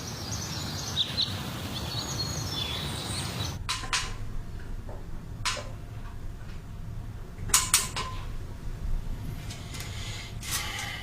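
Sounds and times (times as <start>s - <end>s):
low steady rumble: 3.0s - 11.0s.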